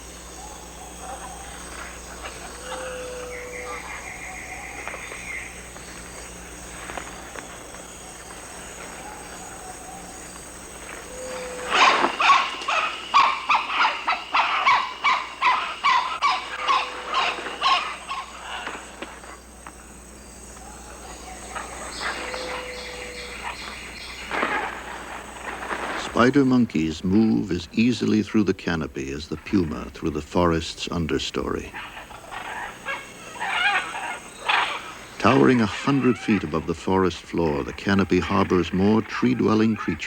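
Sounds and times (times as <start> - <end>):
chorus of forest insects: 0.0 - 40.0
animal calling loudly: 0.2 - 5.6, 11.0 - 19.0, 20.6 - 24.8, 31.6 - 40.0.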